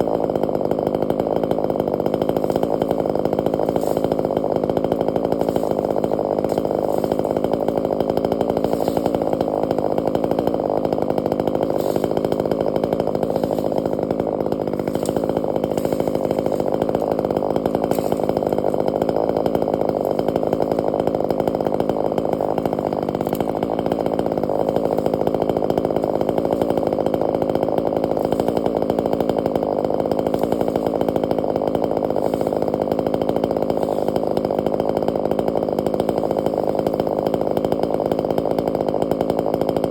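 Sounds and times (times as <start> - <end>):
chainsaw engine running: 0.0 - 39.9.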